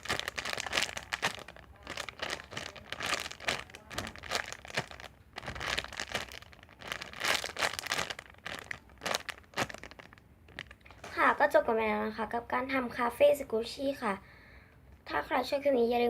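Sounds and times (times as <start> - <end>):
squishy toy crinkling: 0.0 - 11.1.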